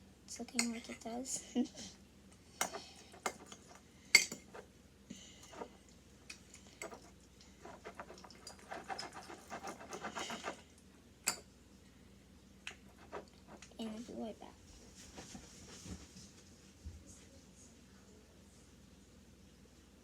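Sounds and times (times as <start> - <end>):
fork scraping against bowl: 2.6 - 4.6, 5.4 - 5.7, 6.8 - 10.7, 12.9 - 13.7.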